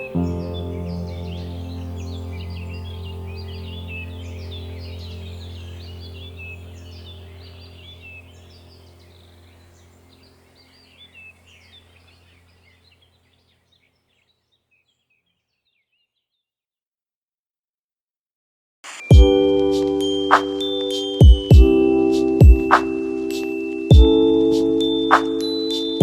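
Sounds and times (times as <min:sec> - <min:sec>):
small birds chirping: 0:00.0 - 0:16.6, 0:19.0 - 0:26.0
steady low hum: 0:01.0 - 0:12.5.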